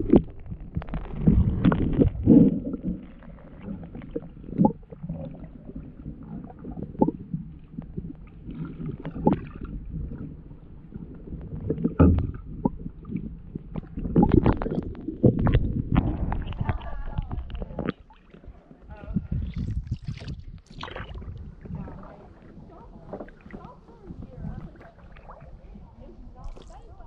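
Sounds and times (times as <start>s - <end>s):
low rumble of water: 0.0s - 27.0s
paddle splashes and knocks: 19.8s - 25.6s.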